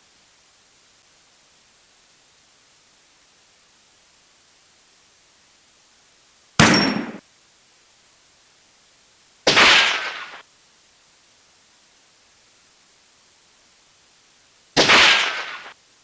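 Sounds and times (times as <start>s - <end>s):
rifle shots: 6.6s - 7.2s, 9.5s - 10.4s, 14.8s - 15.7s.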